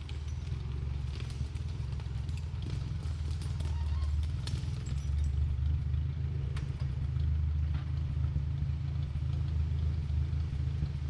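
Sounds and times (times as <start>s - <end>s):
engine running at low speed: 0.0s - 11.0s.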